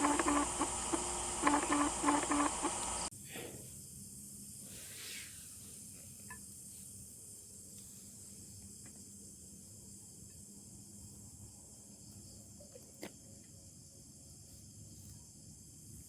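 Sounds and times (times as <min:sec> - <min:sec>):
distant machine drone: 0:00.0 - 0:03.1
insects hissing: 0:00.0 - 0:03.1.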